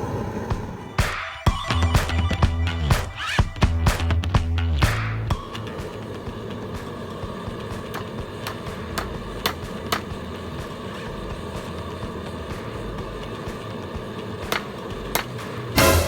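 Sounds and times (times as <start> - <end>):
low hum: 1.6 - 16.0
sharp clicks and ticks: 1.9 - 15.7
forge fire rushing: 5.3 - 16.0.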